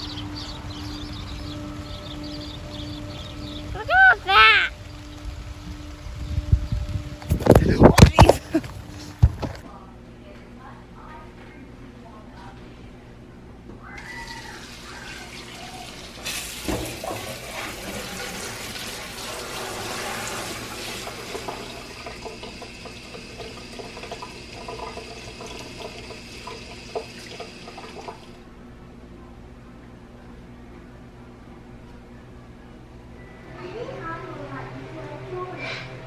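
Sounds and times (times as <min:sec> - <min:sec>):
water rushing: 0:00.0 - 0:06.6.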